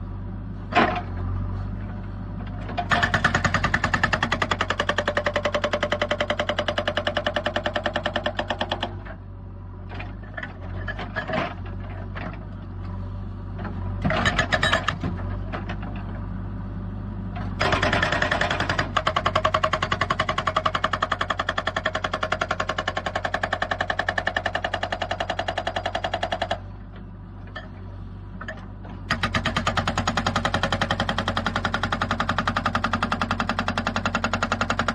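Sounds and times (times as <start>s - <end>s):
excavator engine hum: 0.0s - 34.9s
hydraulic rock breaker hammering stone: 2.8s - 9.0s, 14.0s - 15.9s, 17.5s - 26.6s, 28.4s - 34.9s.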